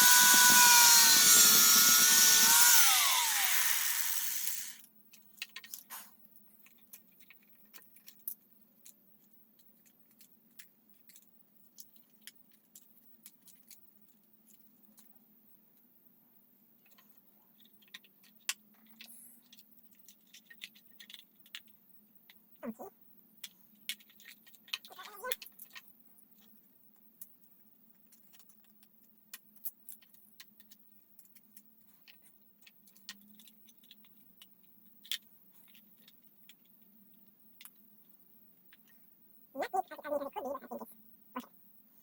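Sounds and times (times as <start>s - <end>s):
small metal parts clicking: 0.0s - 5.9s, 17.6s - 21.8s, 23.4s - 26.5s.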